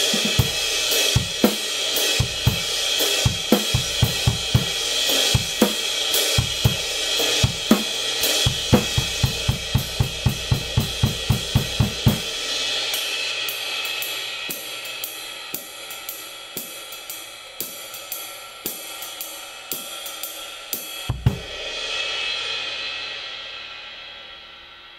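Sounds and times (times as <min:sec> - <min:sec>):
ride cymbal: 0:00.0 - 0:24.9
snare drum: 0:07.4 - 0:12.3.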